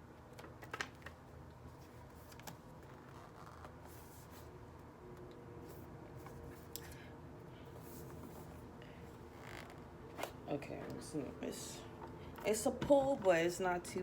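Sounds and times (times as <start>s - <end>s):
soft scraping and rustling: 1.7s - 4.6s, 7.7s - 11.0s.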